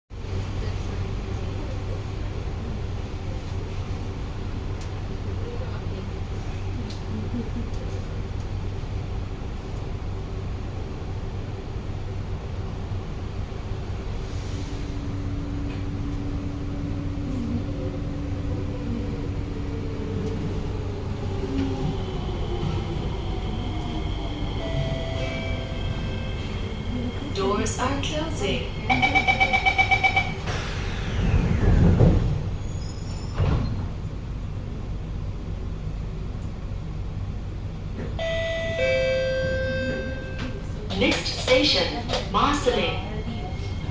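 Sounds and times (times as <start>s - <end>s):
train car equipment hum: 0.1s - 43.9s
train sliding doors closing: 13.6s - 34.7s.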